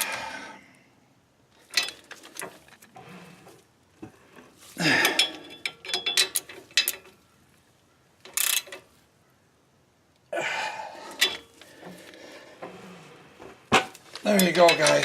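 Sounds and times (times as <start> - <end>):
metal tools clinking on bolts: 1.6 - 2.9, 4.8 - 7.2, 8.3 - 8.9, 11.1 - 12.2, 13.8 - 15.0
torque wrench rattling: 4.9 - 7.2.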